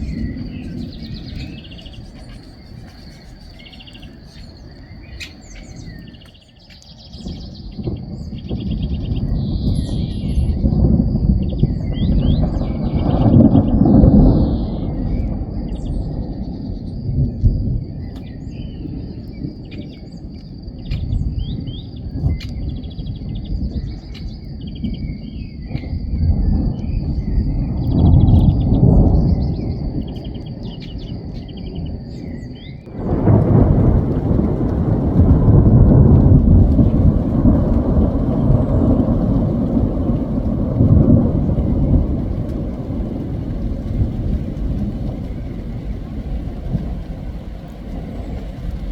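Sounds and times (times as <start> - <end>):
rain hissing: 0.0 - 6.2, 32.8 - 48.9
birds chirping: 0.0 - 48.9
thunder rumbling: 0.0 - 48.9.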